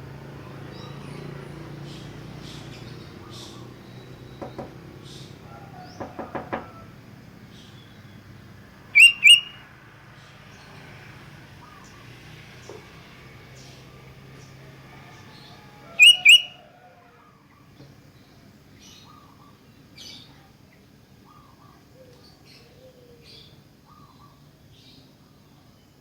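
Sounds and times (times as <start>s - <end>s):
bird calling: 8.9s - 9.7s, 15.9s - 16.6s, 21.2s - 25.0s
bird chirps: 9.0s - 9.6s, 16.0s - 16.6s.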